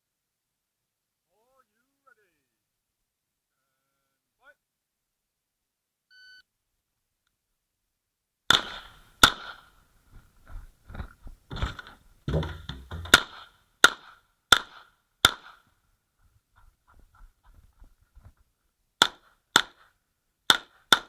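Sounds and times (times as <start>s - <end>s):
pistol shots: 8.5s - 9.7s, 13.0s - 15.7s, 19.0s - 19.9s, 20.5s - 21.0s
quiet knocks and clatter: 10.1s - 13.3s.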